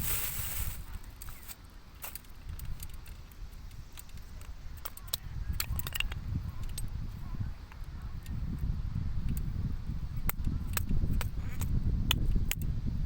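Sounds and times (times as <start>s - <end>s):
wood pieces clicking together: 0.9s - 6.9s.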